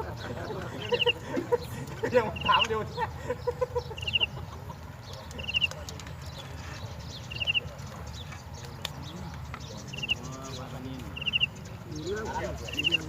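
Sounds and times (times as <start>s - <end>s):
bird calling high quick notes: 11.1s - 11.6s, 12.5s - 13.0s.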